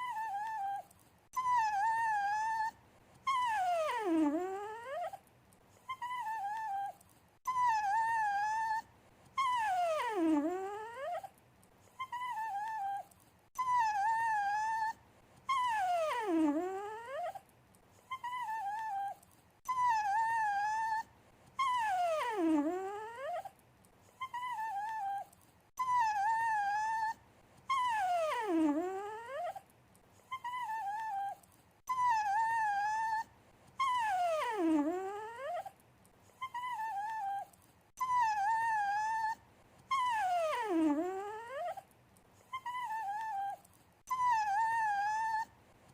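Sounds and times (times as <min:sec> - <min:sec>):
dog whining: 0:00.0 - 0:45.6.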